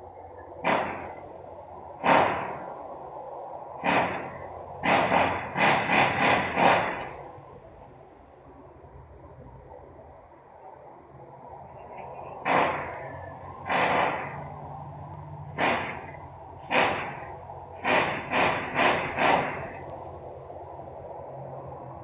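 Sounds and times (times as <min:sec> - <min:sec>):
steady low hum: 0:00.0 - 0:22.0
sharp industrial bangs: 0:00.6 - 0:07.5, 0:12.3 - 0:20.4.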